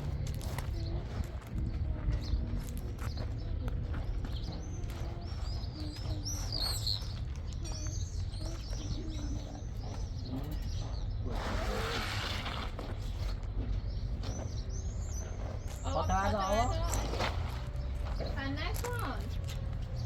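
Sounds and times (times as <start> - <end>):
small bird chirping: 0.1 - 20.0.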